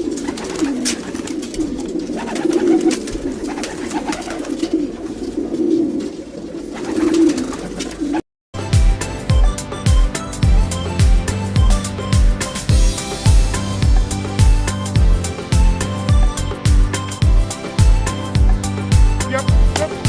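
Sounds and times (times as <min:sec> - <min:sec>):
pigeons cooing: 0:00.0 - 0:08.2
music with a beat: 0:08.6 - 0:20.0.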